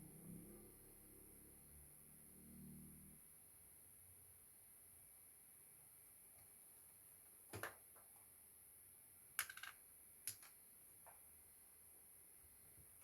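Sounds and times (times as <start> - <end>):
clicks of small hard objects: 9.4 - 10.6.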